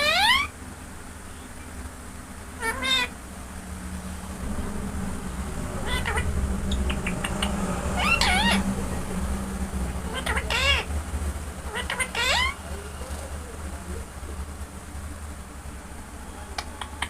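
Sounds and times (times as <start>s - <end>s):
parrot meowing: 0.0s - 0.5s, 2.6s - 3.2s, 5.8s - 8.7s, 10.1s - 10.9s, 11.7s - 12.6s
steady low hum: 0.0s - 17.0s.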